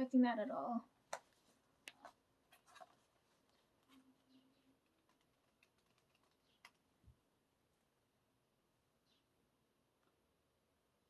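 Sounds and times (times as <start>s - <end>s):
faint clicks and taps: 1.1s - 7.2s.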